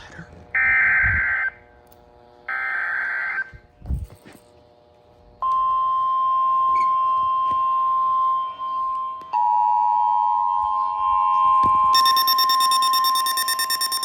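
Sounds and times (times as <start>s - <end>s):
steady single-pitch warning tone: 5.4s - 14.0s
high pulsing electronic chatter: 12.0s - 14.0s
two-tone attention signal: 12.0s - 14.0s.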